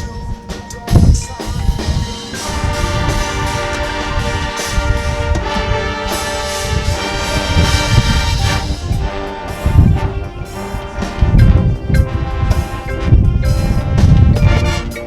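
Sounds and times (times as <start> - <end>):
marching band brass chords: 0.0 - 15.0.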